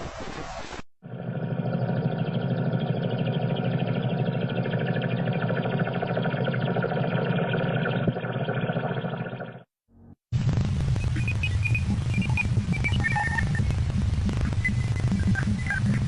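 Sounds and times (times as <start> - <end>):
eerie fluttering drone: 1.1 - 9.7.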